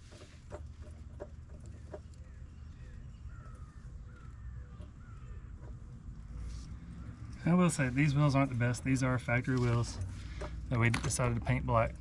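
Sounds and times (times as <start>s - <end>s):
low background rumble: 0.0s - 12.0s
faint bird calls: 0.2s - 7.9s.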